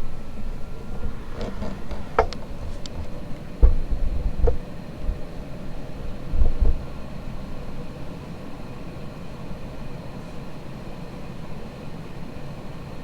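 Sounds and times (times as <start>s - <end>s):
ceiling fan running: 0.0s - 13.0s.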